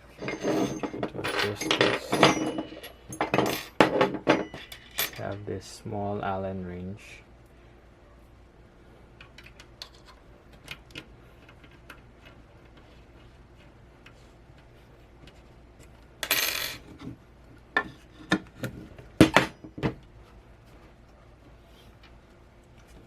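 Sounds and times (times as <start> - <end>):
metal scrape: 0.0 - 2.9
small metal parts clinking: 0.1 - 5.5.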